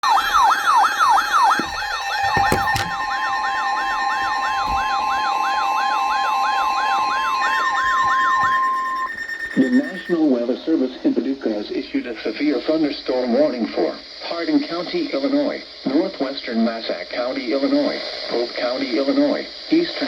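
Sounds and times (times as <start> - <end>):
electronic siren wailing: 0.0 - 10.9.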